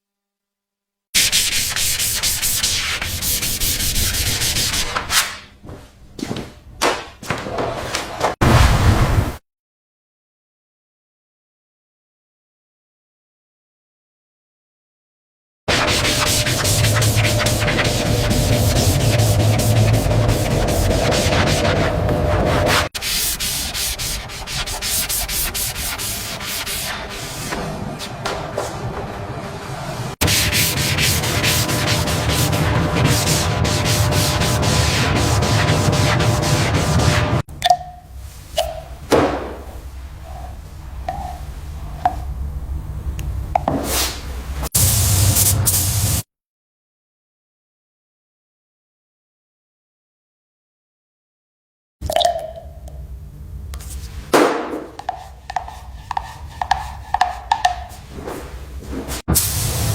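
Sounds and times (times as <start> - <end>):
sanding strokes on a surface: 1.2 - 5.0, 15.7 - 27.6, 30.2 - 37.4.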